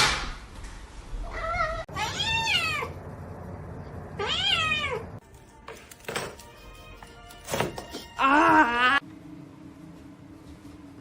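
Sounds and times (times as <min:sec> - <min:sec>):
cat meowing: 0:01.3 - 0:02.9.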